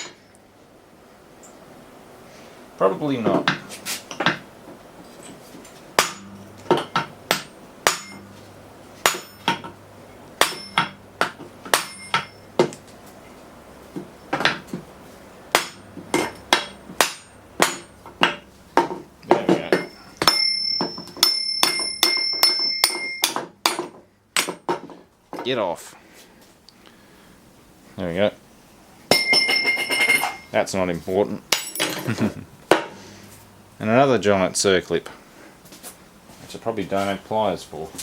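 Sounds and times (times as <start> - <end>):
hammer striking steel shaft: 6.0 - 8.3, 9.0 - 9.8, 10.4 - 12.8, 15.5 - 18.4, 19.3 - 24.6, 29.1 - 30.5
metal ringing high tone: 6.0 - 9.7, 10.4 - 11.1, 11.7 - 12.6, 19.7 - 23.4, 29.1 - 30.6.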